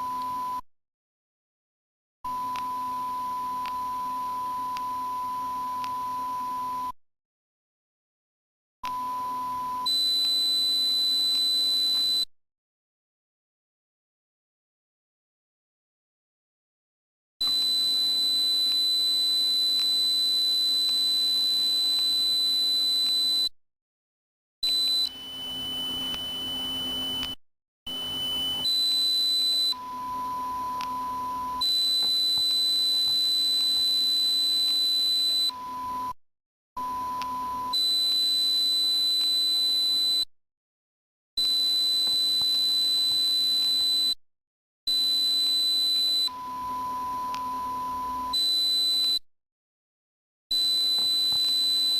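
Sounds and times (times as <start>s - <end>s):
high-pitched sine beep tone: 2.3s - 7.0s, 8.9s - 12.3s, 17.4s - 23.5s, 24.6s - 36.2s, 36.8s - 40.3s, 41.4s - 44.2s, 44.9s - 49.2s, 50.5s - 51.9s.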